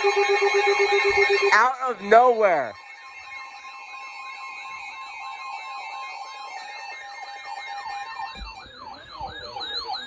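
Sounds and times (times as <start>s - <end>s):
electronic siren alert tones: 0.0s - 4.2s, 6.3s - 10.0s.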